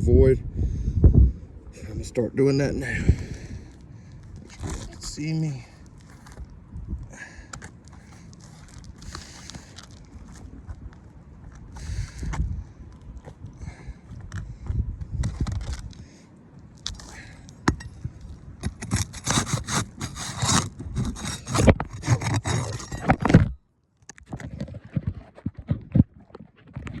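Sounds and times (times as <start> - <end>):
roof shingles scraping and rustling: 18.7 - 23.4.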